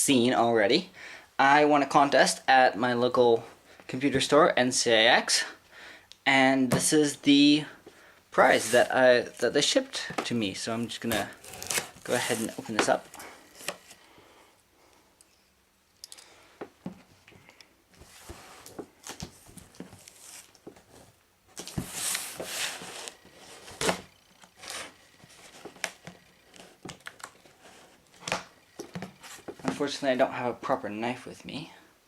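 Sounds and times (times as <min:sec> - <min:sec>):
packing tape scraping and tearing: 0:11.0 - 0:14.0, 0:21.6 - 0:28.5.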